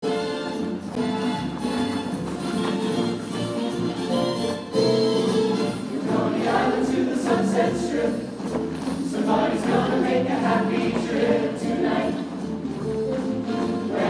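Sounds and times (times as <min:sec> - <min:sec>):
instrumental accompaniment: 0:00.0 - 0:14.0
choir singing sustained notes: 0:05.8 - 0:08.3, 0:09.1 - 0:12.2.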